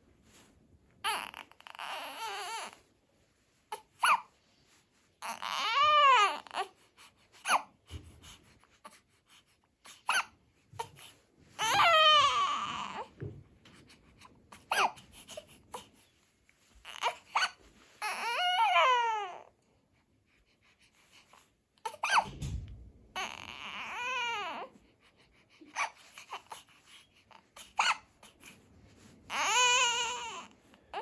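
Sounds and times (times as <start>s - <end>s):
baby crying and fussing: 1.0s - 2.9s, 3.7s - 4.4s, 5.2s - 13.2s, 13.8s - 16.1s, 16.8s - 19.5s, 21.8s - 22.3s, 23.1s - 31.0s.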